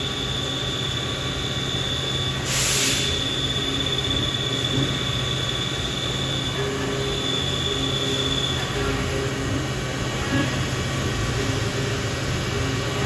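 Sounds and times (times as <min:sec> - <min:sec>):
machinery humming with high whine: 0:00.0 - 0:13.0
burst of hiss: 0:02.4 - 0:03.2.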